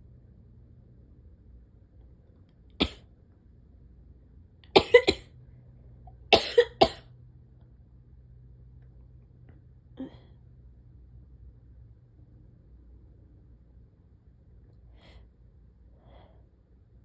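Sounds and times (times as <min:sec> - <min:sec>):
person sneezing or coughing: 0:02.8 - 0:03.0, 0:04.8 - 0:05.3, 0:06.3 - 0:07.0.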